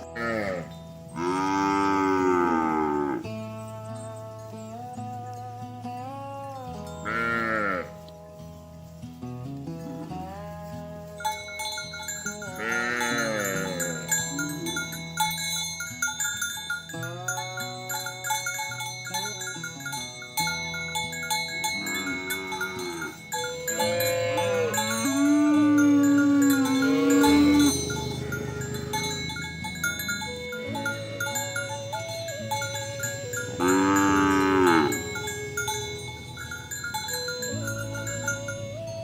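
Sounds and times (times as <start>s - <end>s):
cattle mooing: 0.0s - 4.5s, 6.1s - 8.1s, 12.3s - 15.0s, 21.6s - 37.0s
mallet percussion tune: 11.1s - 39.0s.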